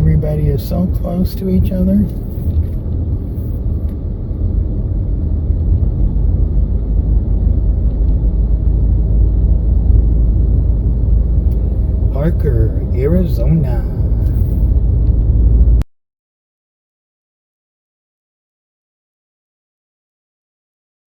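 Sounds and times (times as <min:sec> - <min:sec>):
engine and road noise: 0:00.0 - 0:15.9.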